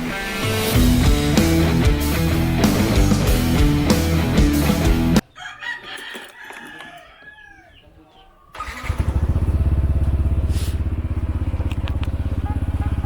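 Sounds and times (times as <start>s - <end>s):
rock music: 0.0s - 5.2s
rooster crowing: 5.2s - 7.9s
scooter engine starting and idling: 8.5s - 13.0s.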